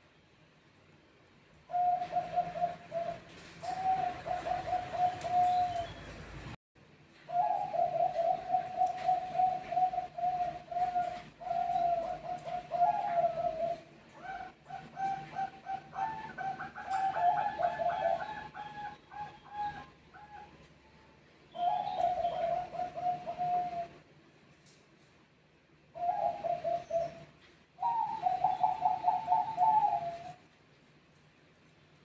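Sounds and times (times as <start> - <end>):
doves cooing: 1.7 - 6.4, 7.3 - 20.7, 21.5 - 24.0, 25.9 - 30.5.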